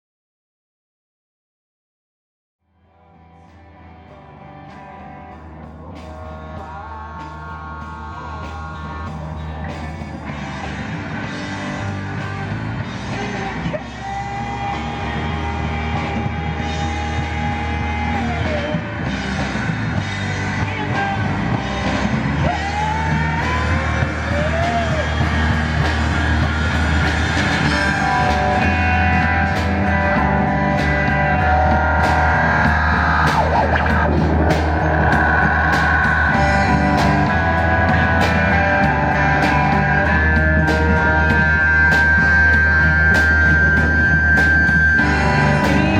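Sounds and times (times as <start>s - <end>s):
street band of horns and drums: 4.8s - 45.9s
brass band playing: 19.6s - 33.4s.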